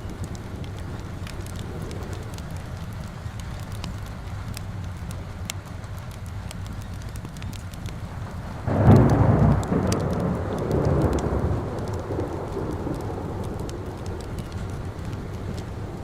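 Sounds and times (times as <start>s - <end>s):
fire crackling and popping: 0.0s - 16.0s
steady rain: 0.0s - 16.0s
thunder rumbling: 7.3s - 16.0s.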